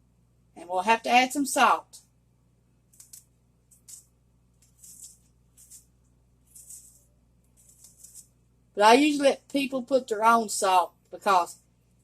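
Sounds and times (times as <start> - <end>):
salt shaker rattling: 3.0 - 8.3.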